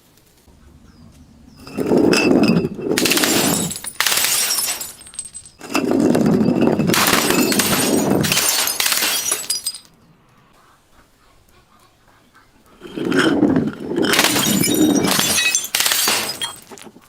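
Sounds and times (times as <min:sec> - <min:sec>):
glass crunching and breaking: 0:01.6 - 0:09.9, 0:12.8 - 0:17.0
glass pieces ringing: 0:01.6 - 0:09.9, 0:12.8 - 0:17.0.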